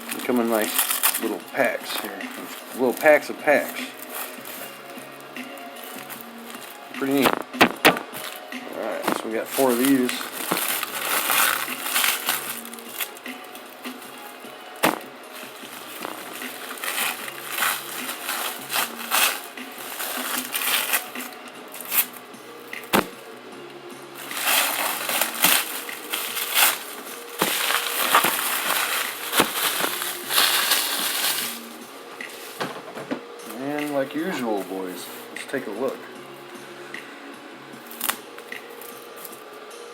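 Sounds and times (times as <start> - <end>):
wrappers crinkling and tearing: 0.0 - 23.2, 24.2 - 31.8
sharp taps and clicks: 7.2 - 8.2.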